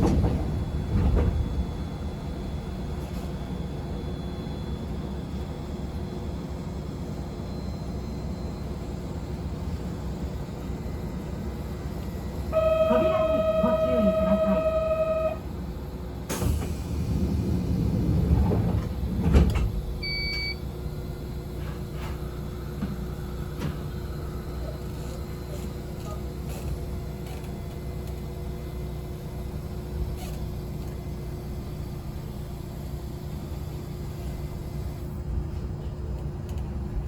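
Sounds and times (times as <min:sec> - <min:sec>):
train doors sliding shut: 0:00.0 - 0:03.5, 0:12.6 - 0:15.4, 0:16.3 - 0:20.0
train rumble: 0:00.0 - 0:07.2, 0:09.2 - 0:20.1
high beep: 0:12.6 - 0:15.4.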